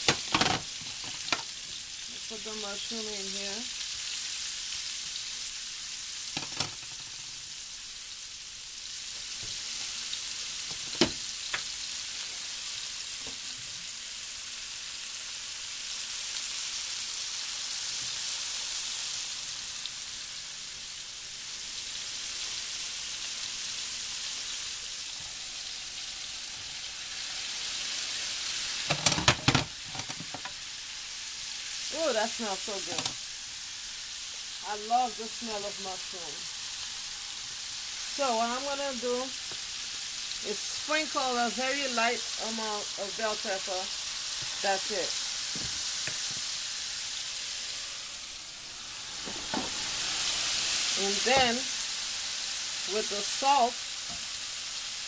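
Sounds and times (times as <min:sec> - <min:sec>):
knocks of stirring against pan: 0:00.0 - 0:01.5, 0:28.8 - 0:30.6, 0:32.9 - 0:33.2
mushrooms sizzling in a pan: 0:00.0 - 0:55.0.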